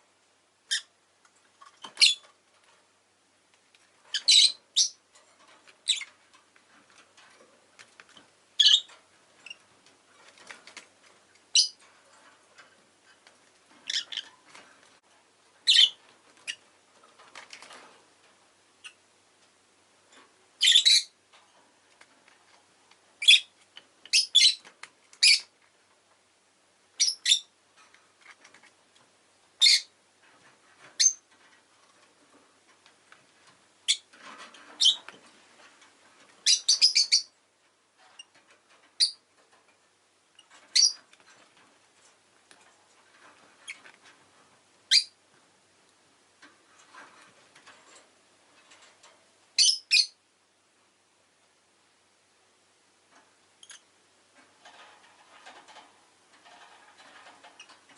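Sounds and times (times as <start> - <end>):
lovebirds chirping: 1.8 - 2.3, 4.1 - 5.0, 5.8 - 6.2, 8.6 - 9.6, 11.5 - 11.8, 13.8 - 14.6, 15.6 - 16.6, 20.6 - 21.2, 23.2 - 25.5, 27.0 - 27.5, 29.6 - 29.9, 31.0 - 31.2, 34.8 - 35.2, 36.4 - 37.4, 40.4 - 41.0, 44.9 - 45.2, 49.6 - 50.2.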